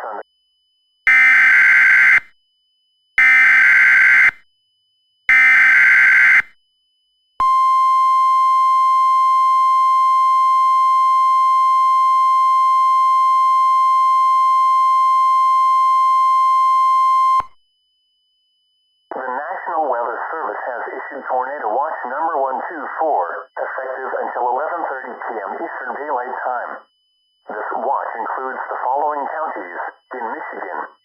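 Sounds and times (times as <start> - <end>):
loud steady alert tone: 1.1 - 2.3, 3.2 - 4.4, 5.3 - 6.5.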